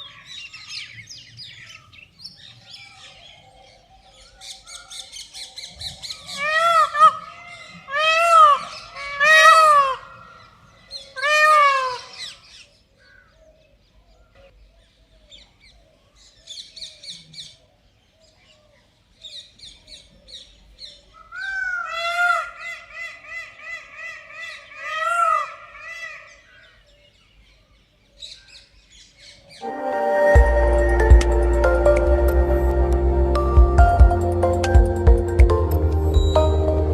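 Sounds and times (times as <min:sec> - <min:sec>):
peacock calling: 0:00.0 - 0:13.4
music: 0:29.6 - 0:36.9.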